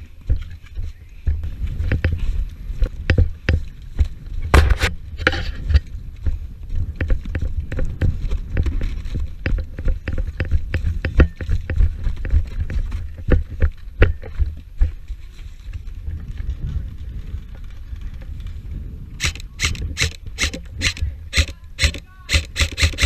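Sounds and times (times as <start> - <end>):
knocks clicks and rubbing: 19.2 - 23.0.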